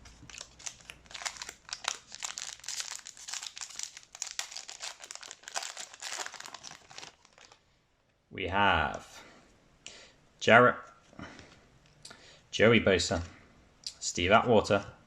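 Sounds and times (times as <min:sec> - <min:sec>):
wrapper crinkling and tearing: 0:00.0 - 0:07.6.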